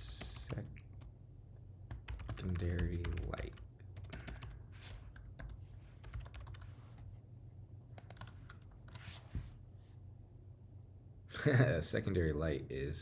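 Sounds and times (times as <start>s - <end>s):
typing on computer keyboard: 0.0s - 1.1s, 1.9s - 6.7s, 8.0s - 9.0s
faint low hum: 0.0s - 13.0s.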